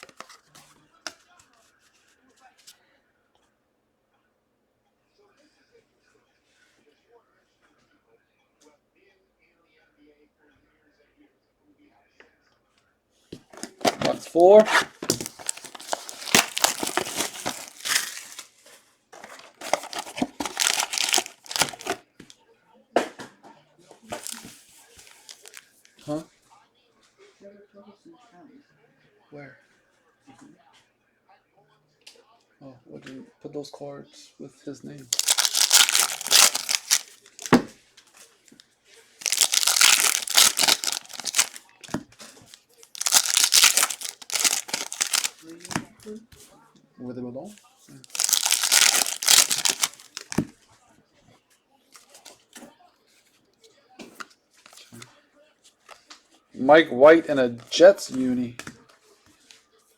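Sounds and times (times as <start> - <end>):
foil wrappers crinkling and tearing: 0.0 - 0.4, 13.6 - 18.6, 19.2 - 22.0, 24.1 - 25.6, 35.1 - 37.7, 39.2 - 42.0, 42.8 - 45.8, 48.1 - 50.5.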